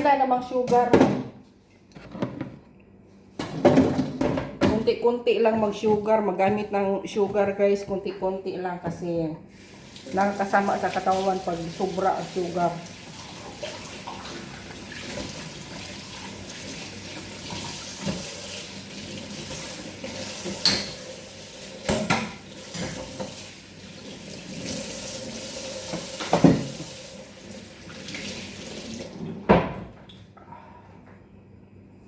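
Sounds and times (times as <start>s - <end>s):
water running from a tap: 9.5s - 29.2s.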